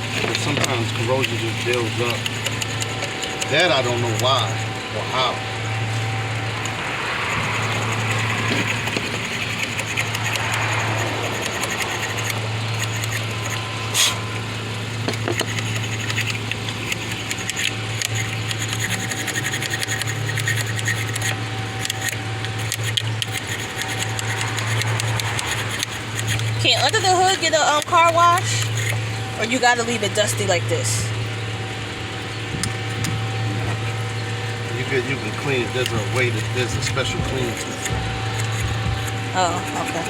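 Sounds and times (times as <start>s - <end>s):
tool scraping battery terminal: 0.0s - 30.7s, 32.2s - 40.0s
steady low hum: 0.0s - 40.0s.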